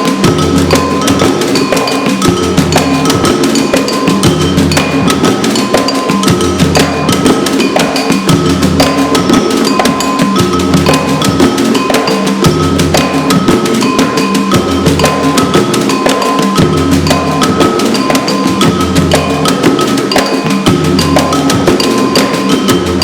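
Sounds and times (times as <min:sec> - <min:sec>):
hand percussion groove: 0:00.0 - 0:23.0
pitched accompaniment with bass: 0:00.0 - 0:23.0.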